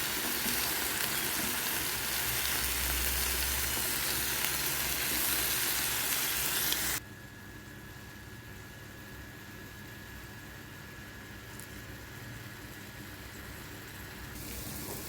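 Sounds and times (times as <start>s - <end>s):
chicken sizzling in oil: 0.0s - 7.0s, 14.3s - 15.0s.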